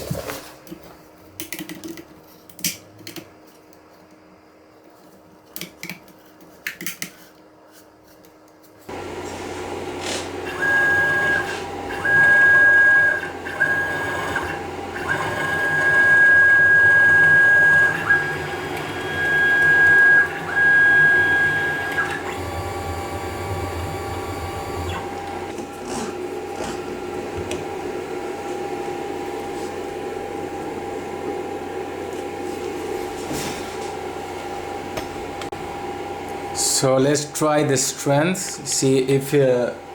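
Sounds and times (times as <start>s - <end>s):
machine steady hum: 7.4s - 39.9s
stepper motors whining: 8.9s - 32.0s.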